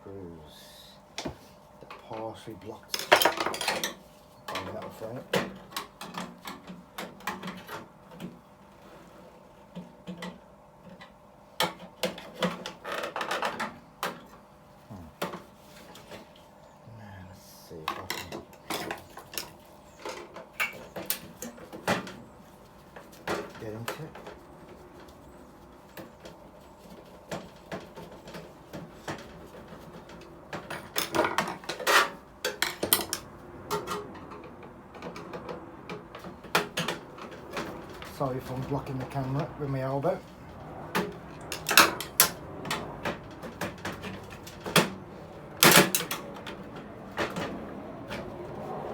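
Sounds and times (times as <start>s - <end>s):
tools and sheet metal clattering: 2.8s - 9.2s, 17.8s - 48.9s.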